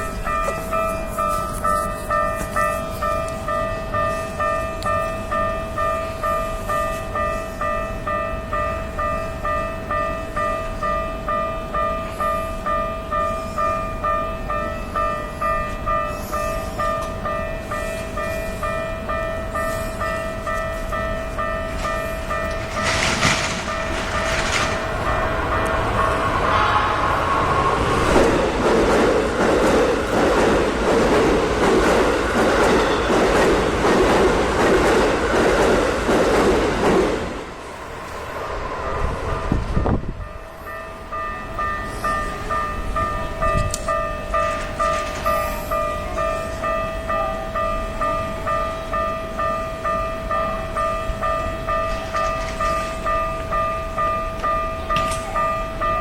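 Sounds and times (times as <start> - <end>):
level crossing warning bell: 0.0 - 28.0, 28.6 - 36.4, 38.8 - 56.0
train wheels clattering over rail joints: 21.7 - 25.8.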